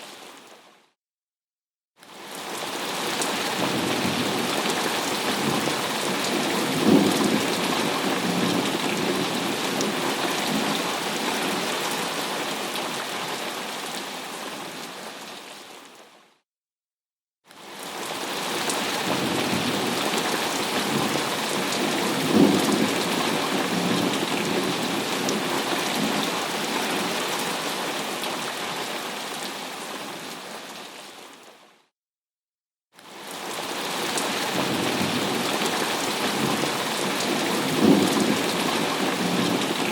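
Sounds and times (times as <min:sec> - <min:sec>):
steady rain: 0:00.0 - 0:00.8, 0:02.0 - 0:16.2, 0:17.5 - 0:31.7, 0:33.0 - 0:39.9
thunder crack and rumble: 0:06.4 - 0:09.3, 0:21.8 - 0:24.8, 0:37.6 - 0:39.7.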